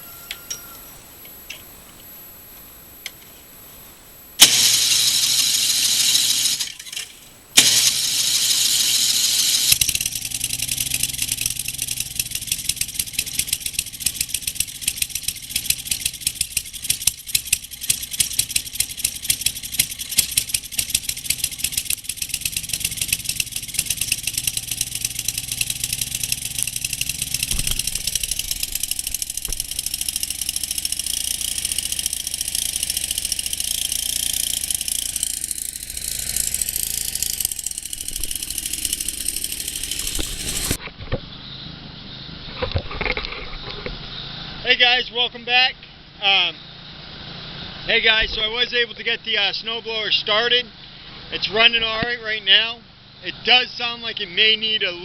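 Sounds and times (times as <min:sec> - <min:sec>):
snowblower engine cranking and running: 0:04.4 - 0:40.8.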